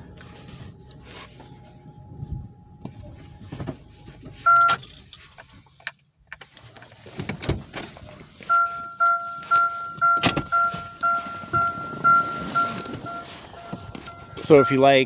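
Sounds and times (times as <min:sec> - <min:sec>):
car warning beep: 0:04.4 - 0:04.9, 0:08.4 - 0:15.0
keys jangling: 0:04.6 - 0:05.6.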